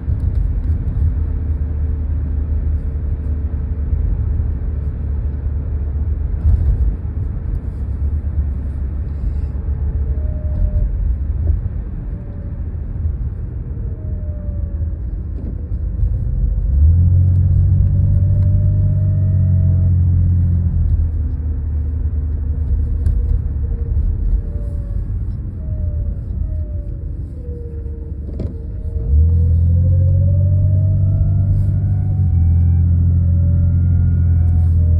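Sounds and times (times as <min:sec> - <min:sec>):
car engine rumbling: 0:00.0 - 0:34.9
faint whines sliding in pitch: 0:22.5 - 0:34.9.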